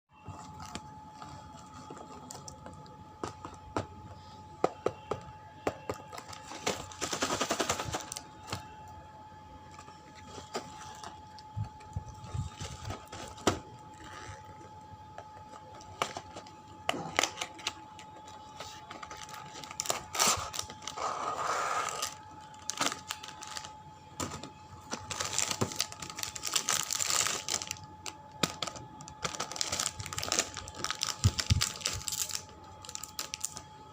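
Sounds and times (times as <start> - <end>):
plastic wrapper crinkling: 6.0 - 8.8, 15.5 - 33.7.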